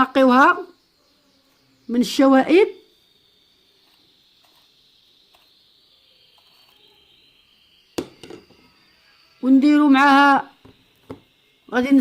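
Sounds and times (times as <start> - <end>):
faint high-pitched hum: 0.0 - 12.0
sharp knock: 8.0 - 8.6.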